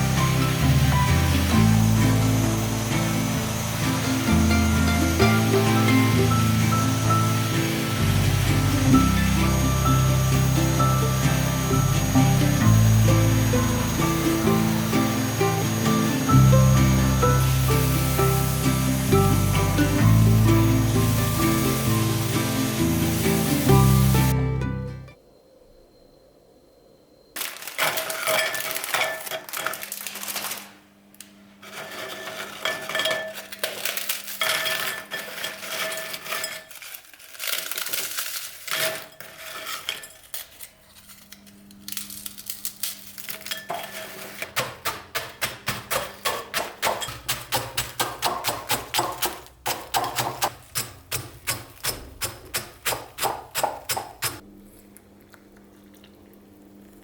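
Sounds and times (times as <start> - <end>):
utensils clinking against dishes: 27.4 - 30.1, 31.6 - 54.4.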